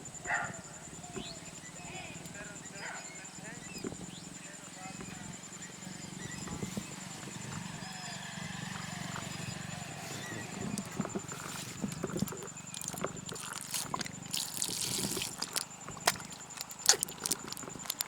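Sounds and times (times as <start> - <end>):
water splashes and drips: 12.7 - 18.0.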